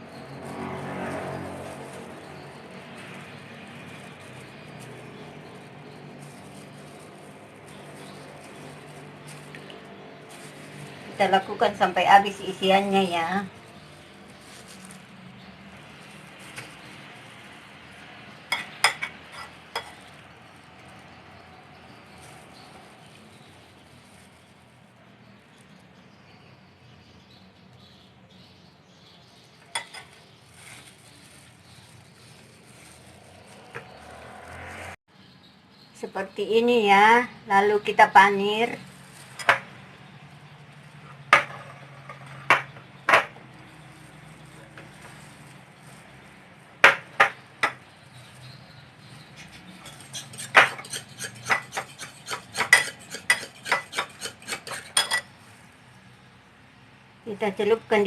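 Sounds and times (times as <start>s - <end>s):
soft rustling: 30.0s - 34.9s.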